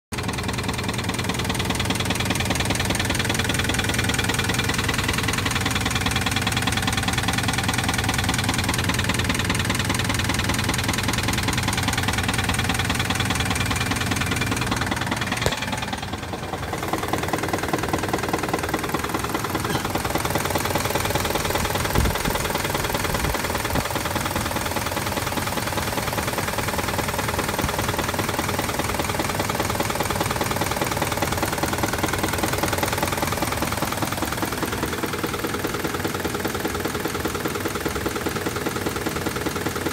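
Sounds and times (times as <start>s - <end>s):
engine running with rapid knock: 0.2s - 39.9s
sharp engine knock: 9.5s - 26.5s.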